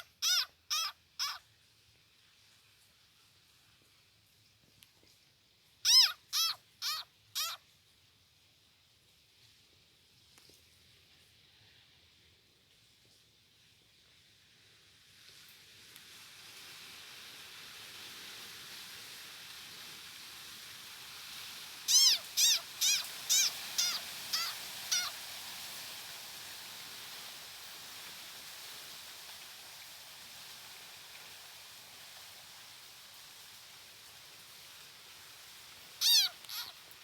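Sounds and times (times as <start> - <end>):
animal high calls: 0.0 - 1.4, 5.8 - 7.6, 21.9 - 25.3, 36.0 - 36.9
faint background hiss: 0.0 - 37.0.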